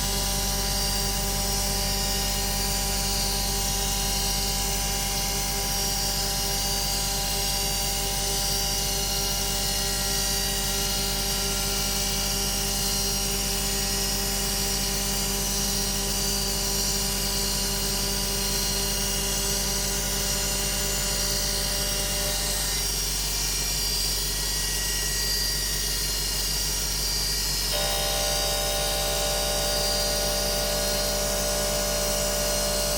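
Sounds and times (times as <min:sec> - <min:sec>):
milling machine whining: 0:26.6 - 0:32.9.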